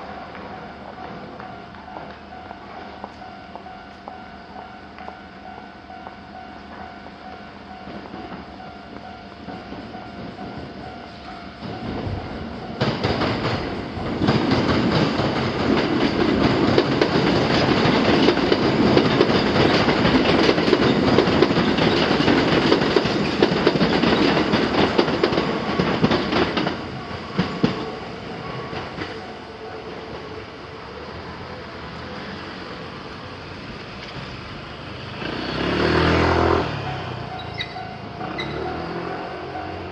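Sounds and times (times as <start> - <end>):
train wheels clattering over rail joints: 11.6 - 30.0.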